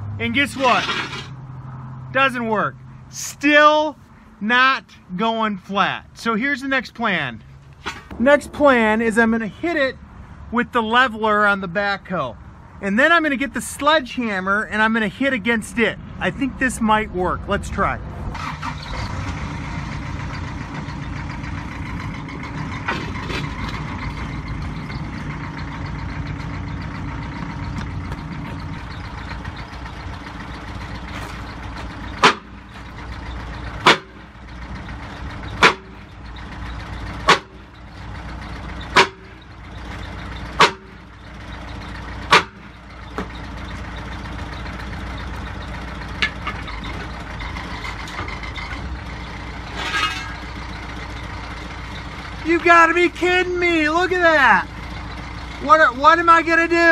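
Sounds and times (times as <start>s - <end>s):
loader engine running: 12.4s - 56.9s
sledgehammer striking steel plate: 32.2s - 32.7s, 33.8s - 34.2s, 35.6s - 36.0s, 37.2s - 37.6s, 38.9s - 39.4s, 40.6s - 41.0s, 42.3s - 42.7s.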